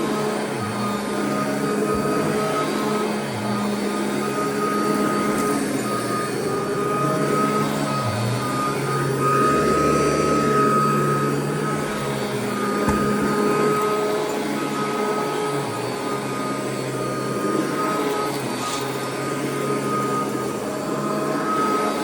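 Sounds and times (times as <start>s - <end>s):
vacuum cleaner running over carpet: 0.0s - 22.0s.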